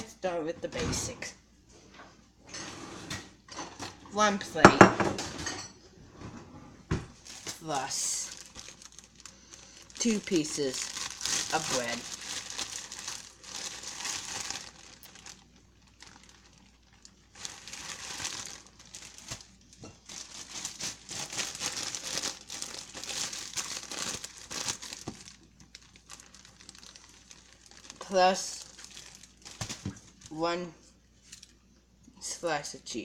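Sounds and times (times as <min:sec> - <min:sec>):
plastic bread bag crinkling: 0:07.0 - 0:31.7.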